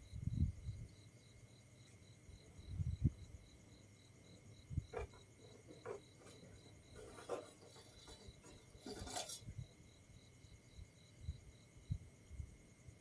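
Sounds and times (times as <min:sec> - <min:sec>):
scraping rustles: 0:04.9 - 0:09.6.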